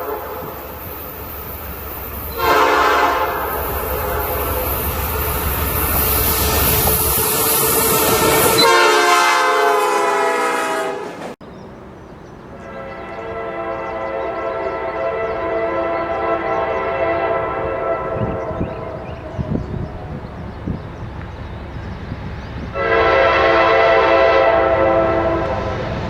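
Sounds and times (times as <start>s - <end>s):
train horn chord: 0.0s - 0.7s, 2.3s - 4.8s, 7.7s - 11.4s, 12.6s - 20.1s, 22.7s - 25.8s
passing train rumble: 0.0s - 26.0s.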